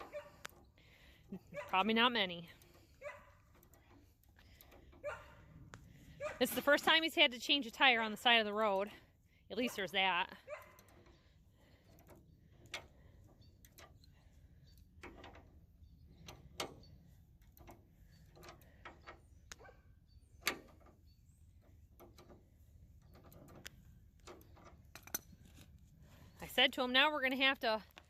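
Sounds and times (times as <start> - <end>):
low steady rumble: 0.0 - 28.0
hand tools clicking and knocking: 21.6 - 25.7.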